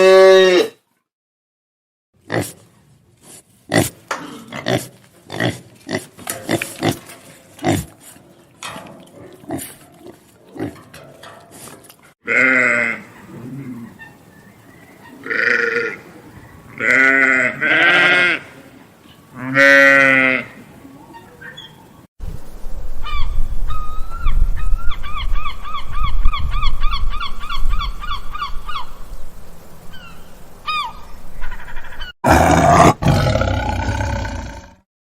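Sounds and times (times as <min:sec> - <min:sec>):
pig grunting and snorting: 0:03.3 - 0:08.4, 0:09.0 - 0:10.9, 0:32.2 - 0:34.8
sheep or goat bleating: 0:12.2 - 0:13.1, 0:15.2 - 0:16.0, 0:16.8 - 0:18.6, 0:19.4 - 0:20.6.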